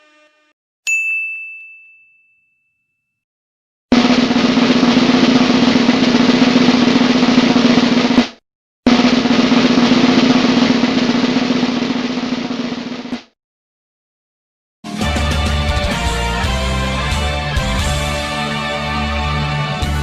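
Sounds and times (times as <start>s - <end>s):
snare drum roll: 3.9s - 13.4s.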